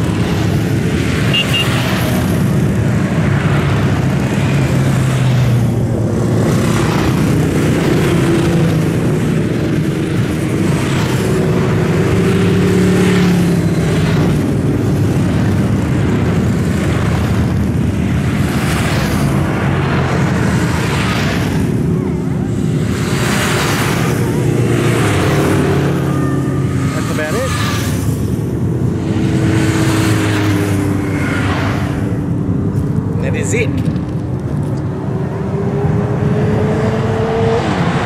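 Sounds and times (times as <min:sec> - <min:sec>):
motorcycles riding past: 0:00.0 - 0:38.0.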